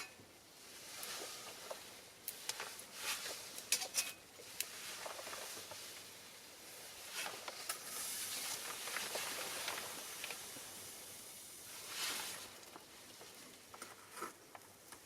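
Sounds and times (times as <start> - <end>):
fire crackling and popping: 0.0 - 15.0
hiss of burning: 4.3 - 13.1.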